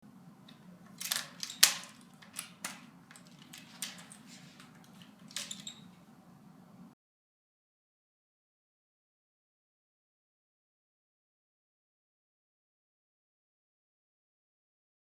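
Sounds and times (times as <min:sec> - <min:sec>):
hard objects clicking and clacking: 0:00.5 - 0:06.0.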